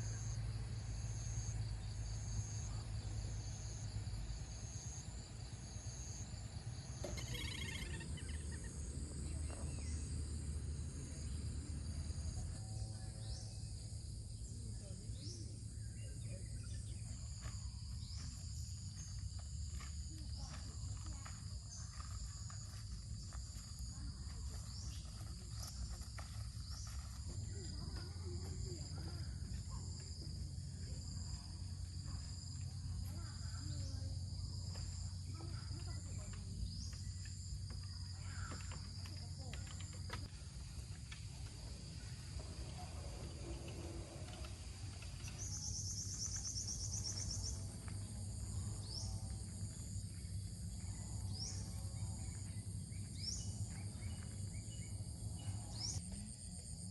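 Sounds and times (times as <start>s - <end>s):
insects trilling: 0.0s - 56.9s.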